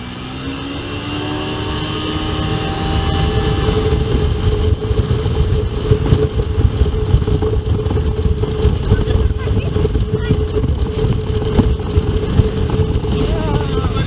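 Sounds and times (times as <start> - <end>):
jet ski engine at high revs: 0.0 - 14.0.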